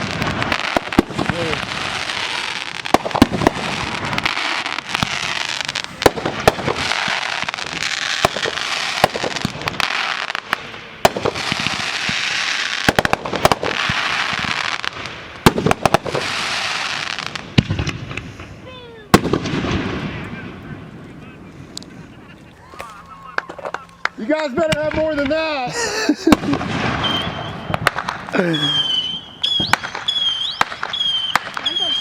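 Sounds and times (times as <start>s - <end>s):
hissing crackle: 0.0s - 25.4s
firework bangs: 0.0s - 32.0s.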